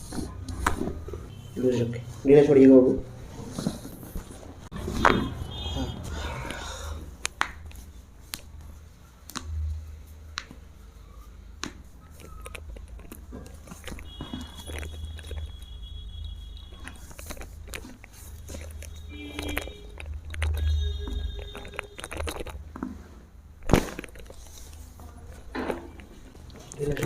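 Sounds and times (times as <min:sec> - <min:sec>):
joints cracking: 0:16.7 - 0:22.8.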